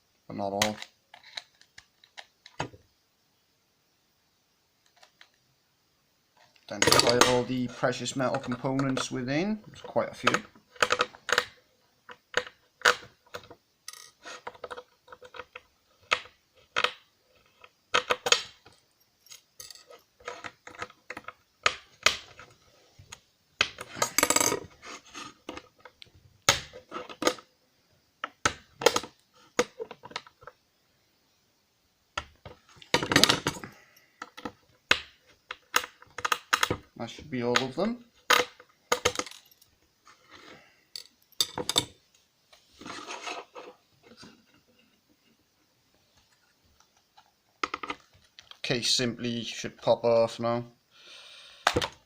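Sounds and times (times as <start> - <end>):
screws clattering: 19.2 - 20.5.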